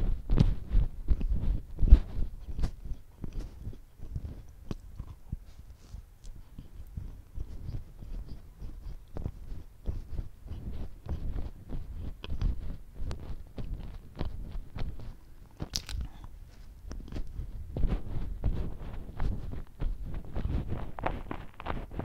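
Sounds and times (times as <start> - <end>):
person chewing donuts: 0.4 - 22.0
mouth clicks: 2.4 - 5.5, 6.2 - 17.3.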